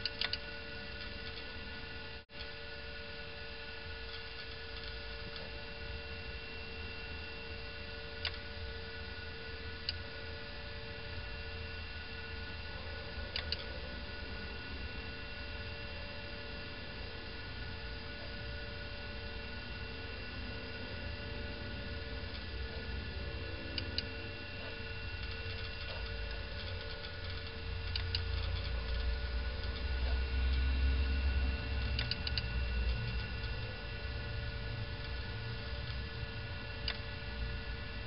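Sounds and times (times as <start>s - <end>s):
electrical hum: 0.0s - 38.0s
faint clicks: 32.0s - 33.6s.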